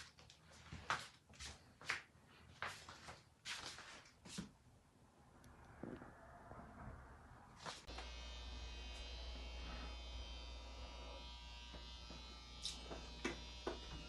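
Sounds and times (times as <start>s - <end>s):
steady electric buzz: 7.6s - 14.0s.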